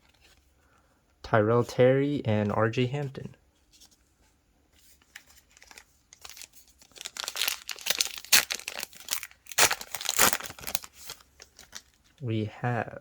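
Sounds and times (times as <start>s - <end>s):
plastic wrapper tearing and crinkling: 5.1s - 12.2s.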